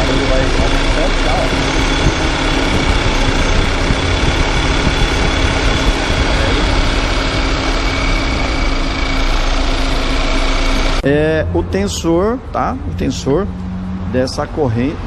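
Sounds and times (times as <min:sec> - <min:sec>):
rapid uneven knocking rattle: 0:00.0 - 0:11.0
car engine running: 0:00.0 - 0:15.0.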